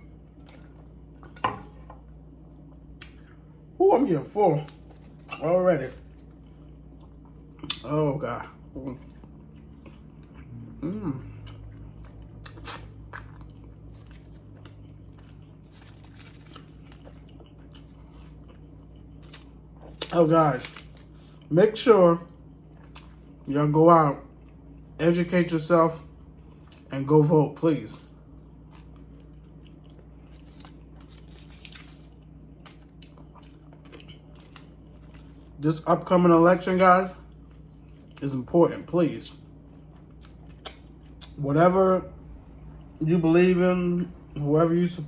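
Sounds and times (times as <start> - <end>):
steady low hum: 0.0 - 45.0
chewing food: 8.6 - 21.5, 28.0 - 35.6.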